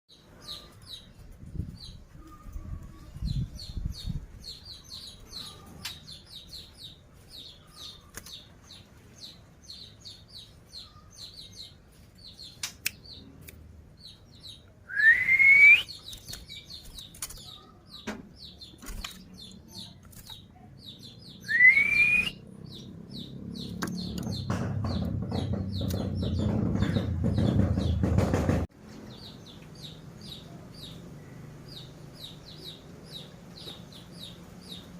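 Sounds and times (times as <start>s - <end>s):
young birds chirping: 0.1s - 34.9s
loud rising whistles: 14.9s - 15.9s, 21.5s - 22.4s.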